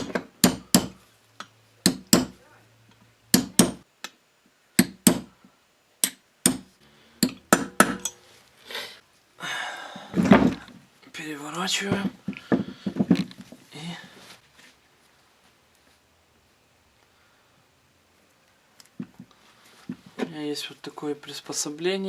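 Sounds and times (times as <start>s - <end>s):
hammer tapping metal: 0.0s - 2.4s, 3.3s - 3.8s, 6.0s - 8.2s.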